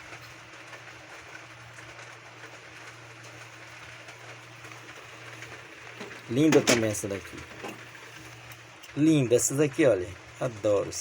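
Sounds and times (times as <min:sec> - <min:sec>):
rain on a tiled roof: 0:00.0 - 0:11.0.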